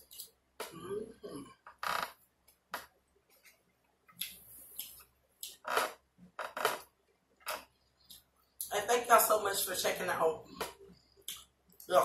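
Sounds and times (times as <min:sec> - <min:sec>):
mouth smacking and chewing: 0:04.1 - 0:05.6.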